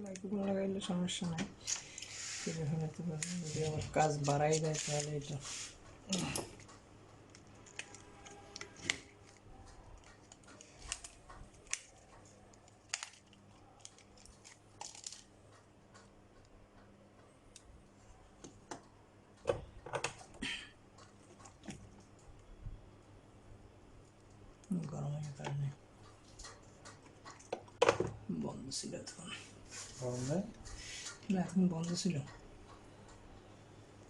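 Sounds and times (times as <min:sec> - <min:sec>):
small clicks and taps of tools: 0:05.8 - 0:17.7, 0:18.4 - 0:22.5, 0:24.2 - 0:28.0.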